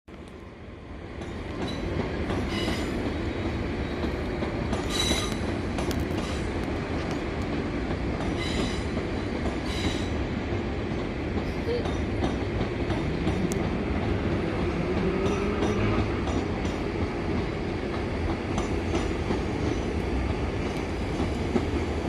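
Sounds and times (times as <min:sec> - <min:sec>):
train wheels rumbling: 0:00.1 - 0:22.0
train wheel squeals: 0:01.2 - 0:03.1, 0:04.7 - 0:05.5, 0:06.2 - 0:06.5, 0:08.2 - 0:10.2.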